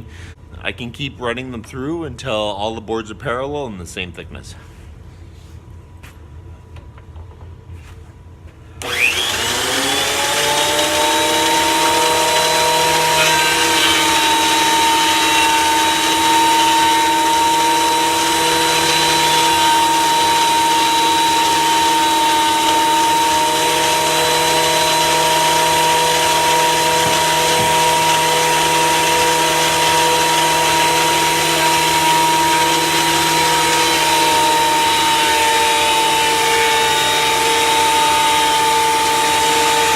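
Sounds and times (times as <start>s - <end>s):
thickness planer motor whining: 8.8s - 39.9s.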